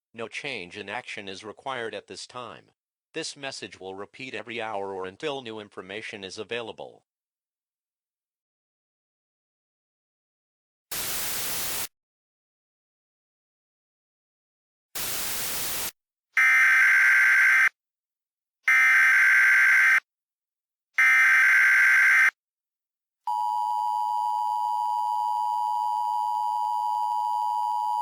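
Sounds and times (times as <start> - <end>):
static burst: 10.9 - 11.9, 15.0 - 16.0.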